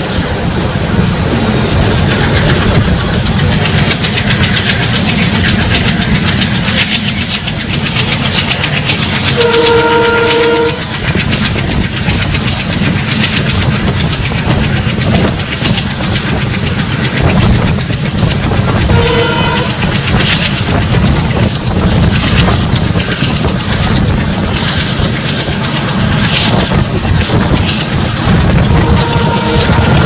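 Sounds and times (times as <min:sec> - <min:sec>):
diesel locomotive engine under load: 0:00.0 - 0:30.0
wheel clatter on rails: 0:00.0 - 0:30.0
train horn blast: 0:09.3 - 0:10.9, 0:18.8 - 0:19.9, 0:28.7 - 0:30.0.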